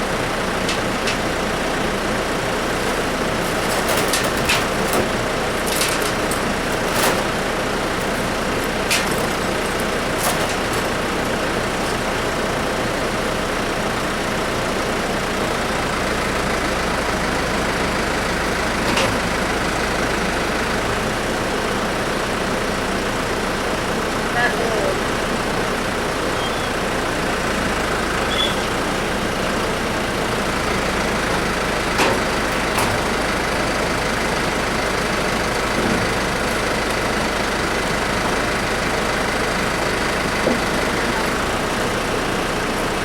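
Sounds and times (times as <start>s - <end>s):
mechanical running noise: 2.4s - 12.0s.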